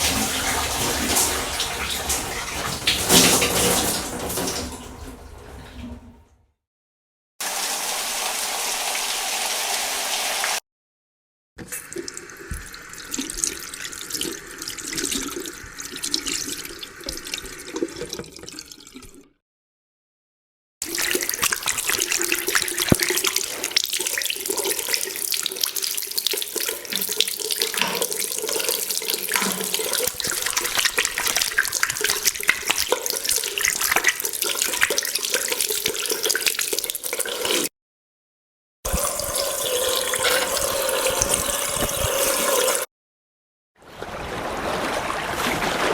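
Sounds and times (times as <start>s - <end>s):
running water splashing: 0.0s - 6.1s, 7.4s - 10.6s, 20.8s - 37.7s, 38.9s - 42.9s.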